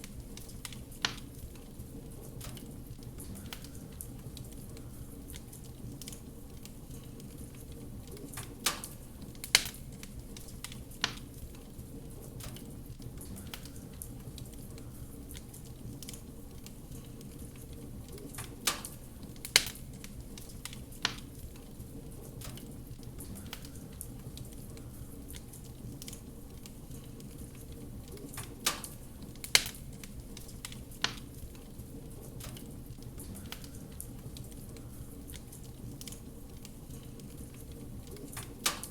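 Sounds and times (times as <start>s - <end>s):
wood fire crackling: 0.0s - 38.9s.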